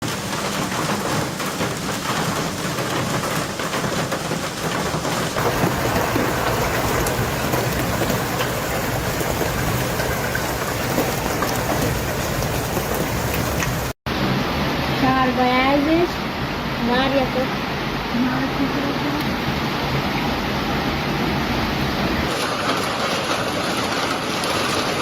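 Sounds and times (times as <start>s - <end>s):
hailstones pelting down: 0.0s - 14.0s, 22.3s - 25.0s
storm rushing: 0.0s - 25.0s.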